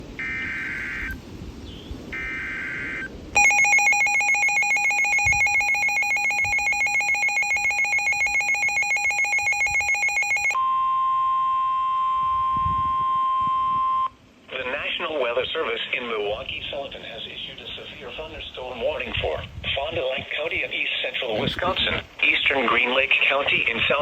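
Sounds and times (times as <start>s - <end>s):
steady warning tone: 0.2s - 1.2s, 2.1s - 14.1s
pulsing trilling alert tone: 2.2s - 10.6s.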